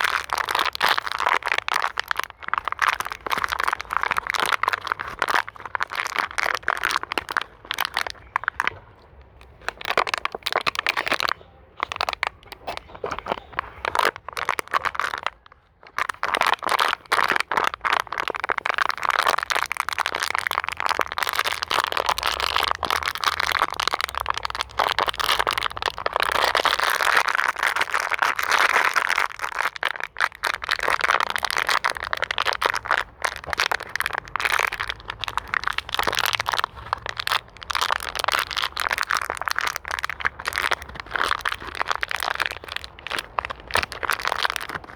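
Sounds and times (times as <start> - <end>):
plastic bottle crinkling: 0.0 - 44.9.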